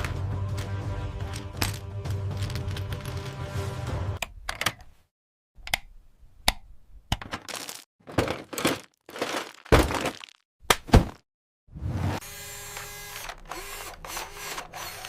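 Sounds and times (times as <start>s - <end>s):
background music: 0.0s - 4.2s
sharp clicks and clattery bursts: 12.4s - 15.0s.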